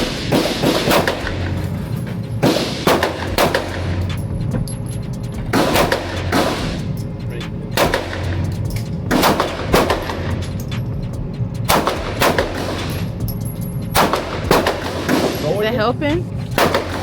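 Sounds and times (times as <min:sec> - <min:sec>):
pistol shots with echo: 0:00.0 - 0:01.7, 0:02.4 - 0:04.0, 0:05.5 - 0:06.8, 0:07.8 - 0:08.5, 0:09.1 - 0:10.5, 0:11.7 - 0:13.1, 0:14.0 - 0:15.4, 0:16.6 - 0:17.0.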